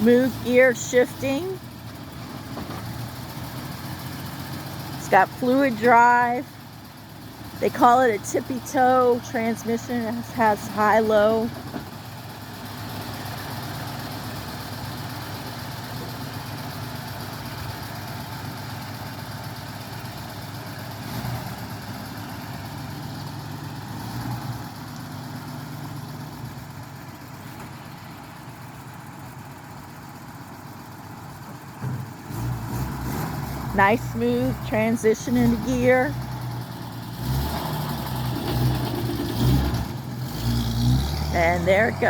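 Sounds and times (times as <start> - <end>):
car engine running while driving: 0.0 - 42.0.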